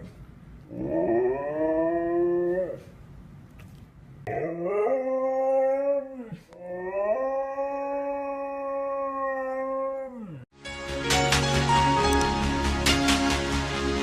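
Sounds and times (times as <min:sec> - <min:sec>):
dog howling: 0:04.3 - 0:10.4
music: 0:10.5 - 0:14.0.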